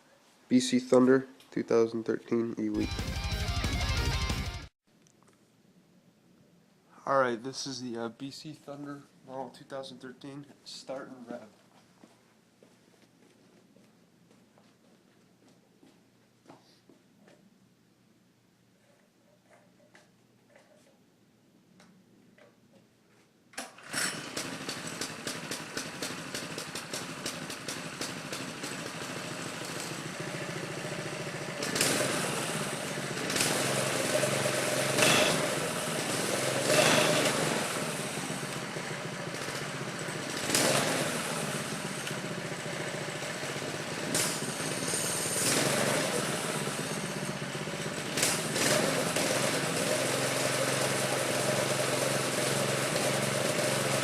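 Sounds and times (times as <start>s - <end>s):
small engine idling and revving: 23.8s - 54.0s.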